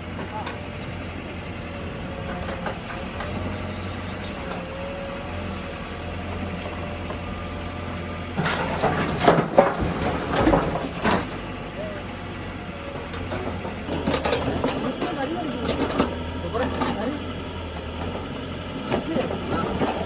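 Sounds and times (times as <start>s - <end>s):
diesel engine whining: 0.0s - 20.0s
loud clattering knocks: 8.3s - 11.5s.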